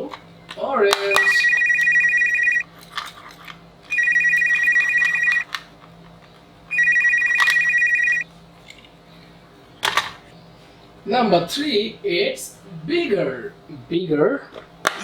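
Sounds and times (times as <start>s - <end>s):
electronic ringtone trilling: 1.2s - 2.7s, 3.9s - 5.5s, 6.7s - 8.2s.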